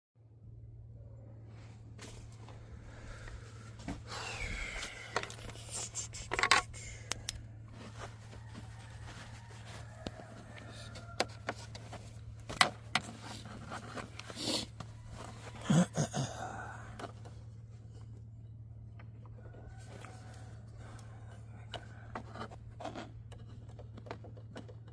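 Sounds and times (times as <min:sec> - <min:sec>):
steady low hum: 0:00.2 - 0:24.6
clicks knocks and scrapes of handling: 0:05.1 - 0:15.4, 0:19.0 - 0:24.9.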